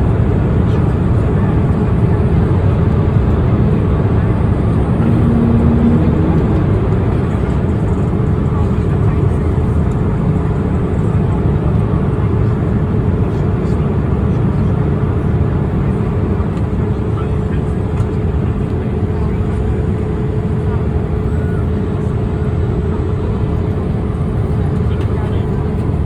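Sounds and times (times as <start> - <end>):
aircraft cabin engine roar: 0.0 - 26.0
faint low tone: 4.3 - 7.8.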